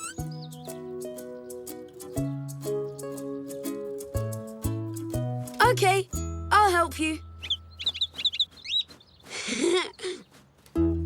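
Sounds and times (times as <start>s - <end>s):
high chirping glides: 0.0s - 4.6s, 6.1s - 9.3s
gentle held notes music: 0.0s - 8.6s, 10.7s - 11.0s.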